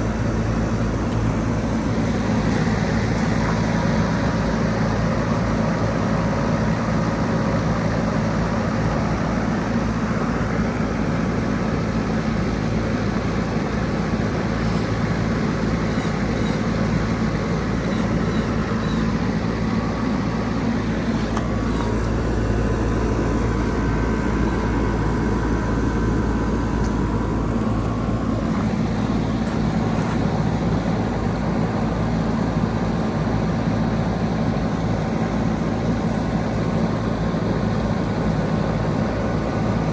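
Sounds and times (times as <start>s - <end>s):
compressor hum: 0.0s - 39.9s.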